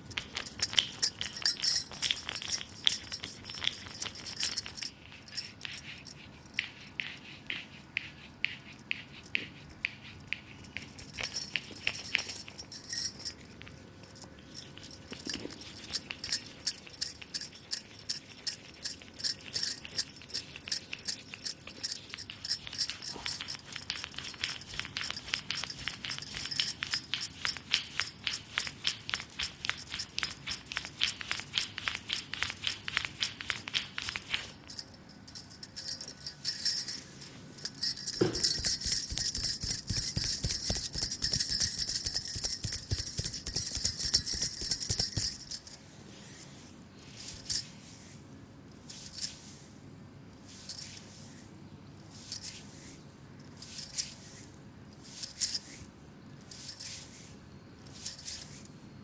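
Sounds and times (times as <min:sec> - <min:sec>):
hands rubbing: 0:00.1 - 0:47.7
light jingle: 0:00.2 - 0:07.3, 0:10.2 - 0:45.8
hands striking in percussive massage: 0:14.8 - 0:37.0, 0:37.6 - 0:45.8.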